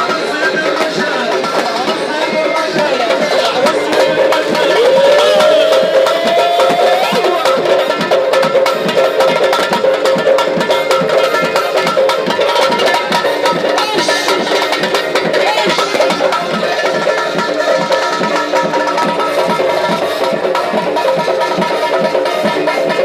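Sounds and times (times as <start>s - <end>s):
hand drums beat: 0.0s - 23.0s
held sliding melodic line: 2.8s - 7.4s.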